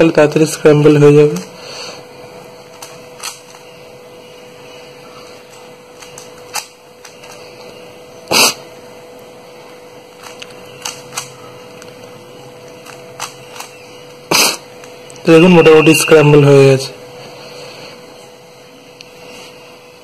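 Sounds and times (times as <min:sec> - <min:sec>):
faint steady hum: 0:00.0 - 0:20.0
puzzle cube clicking: 0:10.2 - 0:11.9, 0:12.7 - 0:14.6.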